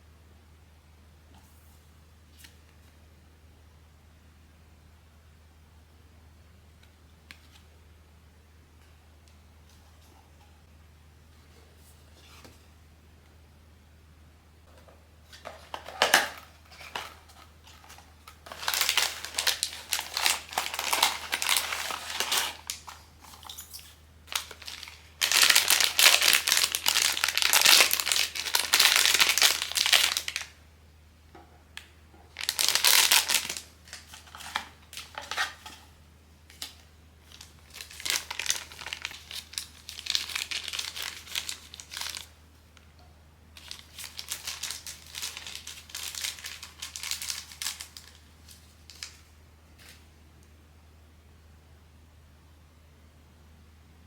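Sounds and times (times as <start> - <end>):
plastic packaging crinkling: 15.3 - 30.6, 32.3 - 35.8, 36.5 - 42.4, 43.6 - 50.0.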